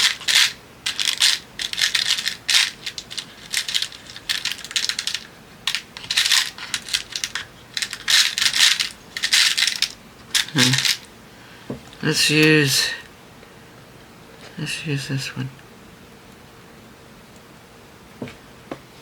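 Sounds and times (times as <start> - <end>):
craft pieces clattering in container: 0.0 - 11.1.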